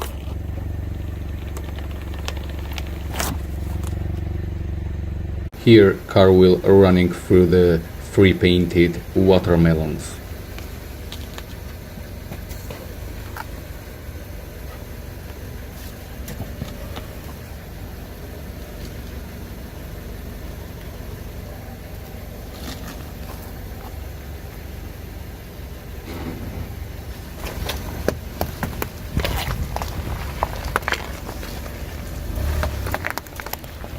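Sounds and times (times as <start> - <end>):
sharp cracks and crunches: 0.0 - 4.5, 27.1 - 33.9
car engine idling: 0.0 - 33.9.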